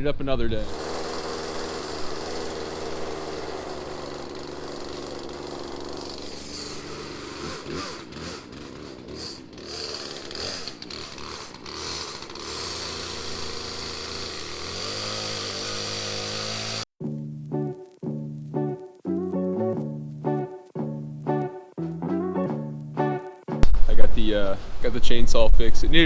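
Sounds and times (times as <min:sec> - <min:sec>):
chainsaw engine running: 0:00.6 - 0:17.5.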